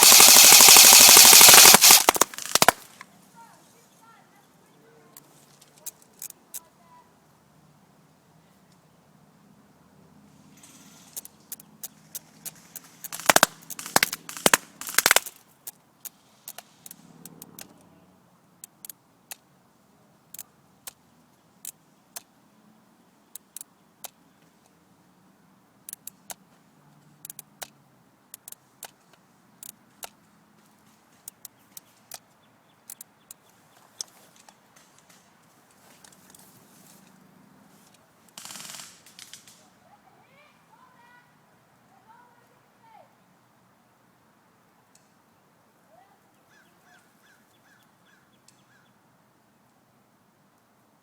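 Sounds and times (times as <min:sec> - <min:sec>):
airsoft guns firing: 0:00.0 - 0:03.0, 0:13.1 - 0:15.4, 0:38.4 - 0:39.6.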